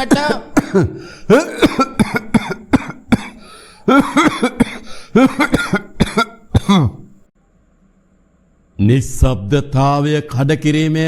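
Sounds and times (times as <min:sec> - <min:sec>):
man coughing: 0:00.0 - 0:07.2.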